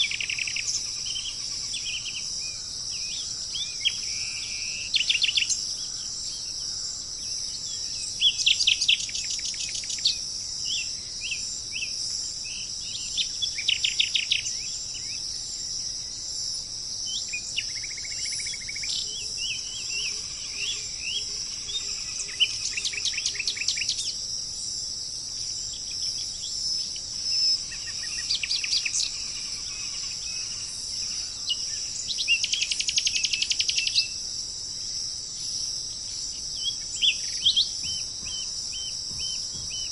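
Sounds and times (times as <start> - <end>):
birds chirping trills: 0.0 - 16.2, 17.0 - 24.6, 25.3 - 34.3, 35.0 - 39.9
high-pitched insect drone: 0.0 - 39.9.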